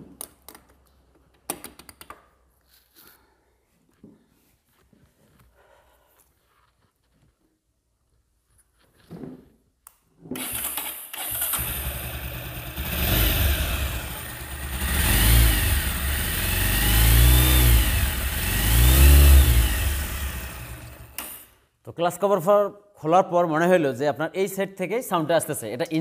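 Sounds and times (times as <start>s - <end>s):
motorcycle engine revving: 10.4s - 21.4s.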